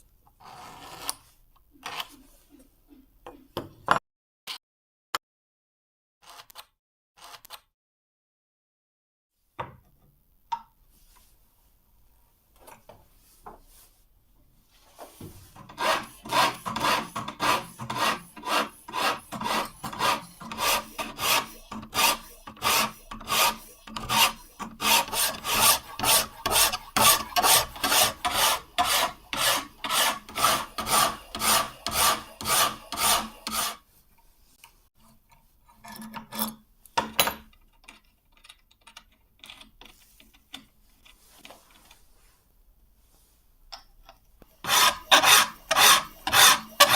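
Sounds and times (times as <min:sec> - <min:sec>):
file rasping on knife blade: 0:15.6 - 0:33.8, 0:44.6 - 0:46.9.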